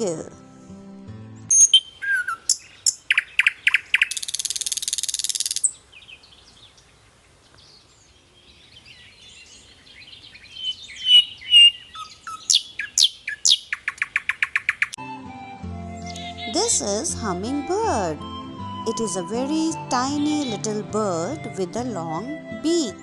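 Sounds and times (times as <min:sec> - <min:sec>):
nightingale singing: 0:01.5 - 0:15.0, 0:15.8 - 0:23.0.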